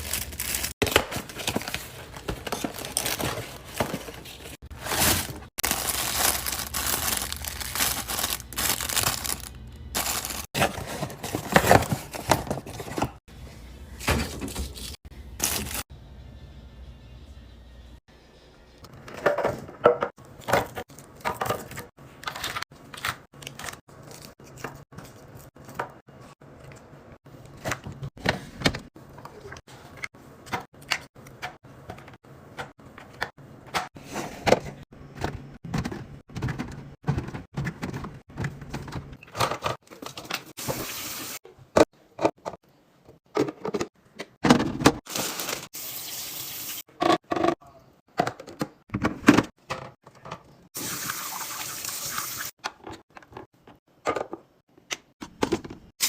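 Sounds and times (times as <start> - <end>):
plastic and glass containers clinking: 5.0 - 13.2.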